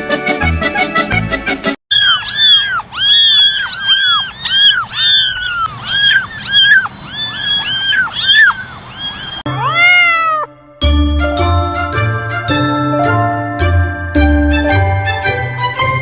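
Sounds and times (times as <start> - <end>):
kittens meowing: 1.9 - 10.5.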